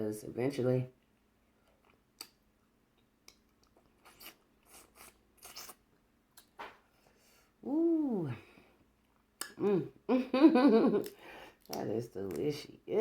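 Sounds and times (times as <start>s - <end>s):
person chewing seafood: 3.2s - 5.8s.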